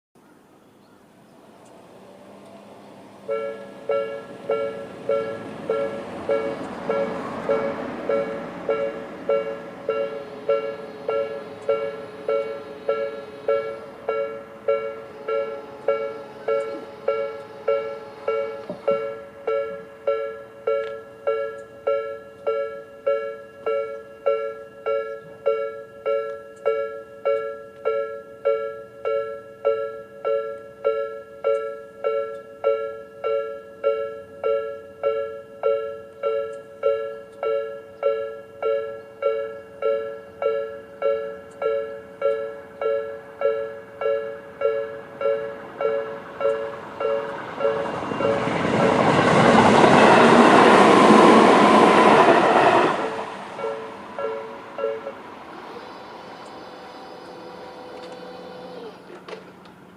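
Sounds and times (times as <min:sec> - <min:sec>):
level crossing warning bells: 0:02.9 - 0:59.0.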